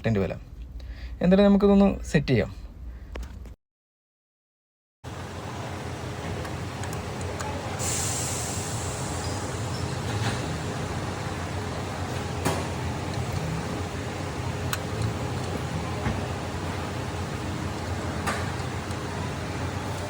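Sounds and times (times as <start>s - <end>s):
steady low hum: 0.0s - 3.6s, 5.1s - 20.0s
sudden hiss: 7.8s - 11.1s.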